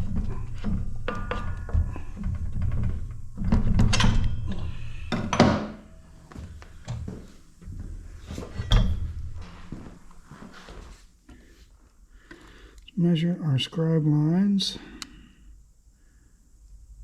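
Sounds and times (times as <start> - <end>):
metal parts knocking and clunking: 0.0 - 6.0, 8.3 - 9.7.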